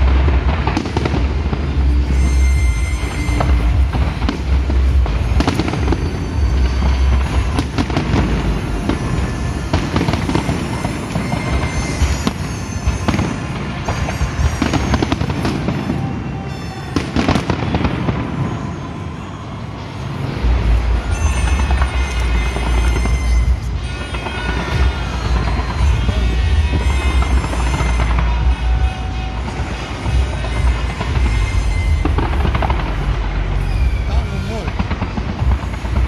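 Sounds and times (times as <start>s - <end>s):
loud music with deep bass: 0.0s - 12.2s, 20.4s - 36.0s
fireworks bangs and crackling: 0.0s - 36.0s.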